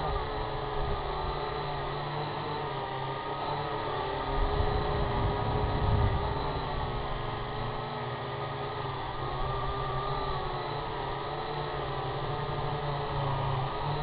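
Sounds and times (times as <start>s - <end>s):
drone propellers whirring: 0.0s - 14.0s
low rumble: 4.6s - 7.4s.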